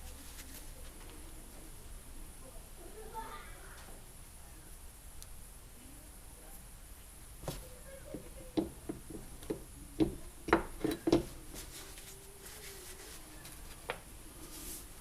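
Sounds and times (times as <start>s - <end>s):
tools knocking and clicking: 8.1s - 11.3s.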